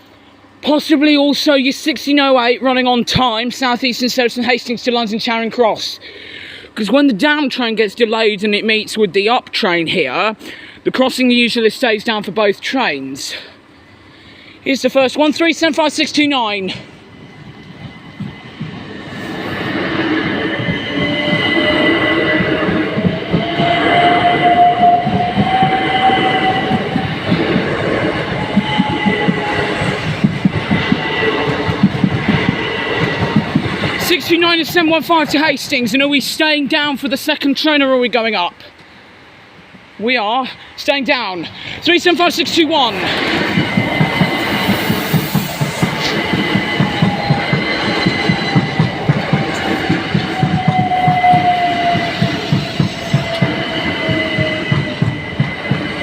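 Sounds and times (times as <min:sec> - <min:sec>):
electric train whine: 0:00.0 - 0:56.0
train wheels clattering over rail joints: 0:17.5 - 0:35.8, 0:42.9 - 0:56.0.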